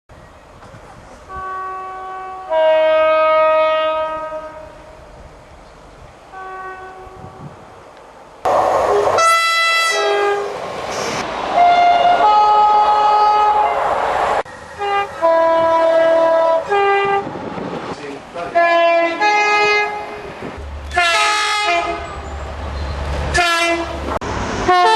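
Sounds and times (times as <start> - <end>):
rushing noise of a train: 0.1 - 24.9
train horn blasts: 1.3 - 5.0, 6.3 - 7.5, 8.9 - 10.5, 11.6 - 13.8, 14.8 - 17.3, 18.5 - 20.2, 20.9 - 22.3, 23.3 - 24.1, 24.7 - 24.9.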